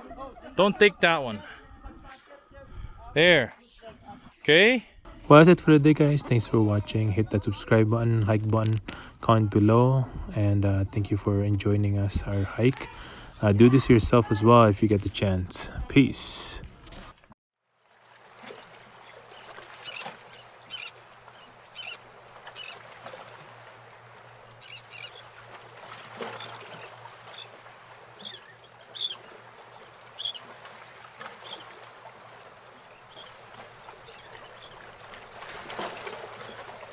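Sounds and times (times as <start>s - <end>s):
running water: 5.3s - 36.9s
birds calling: 18.5s - 36.9s.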